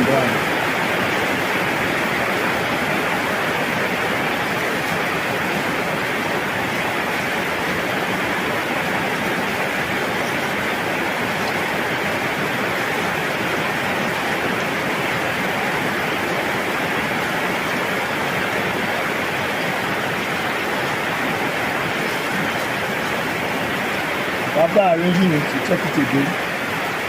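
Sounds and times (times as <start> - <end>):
steady hiss: 18.0 - 27.0.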